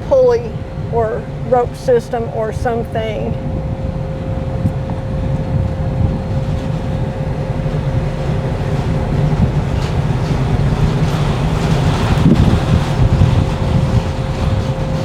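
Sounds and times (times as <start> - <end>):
constant steady hum: 0.0 - 15.0.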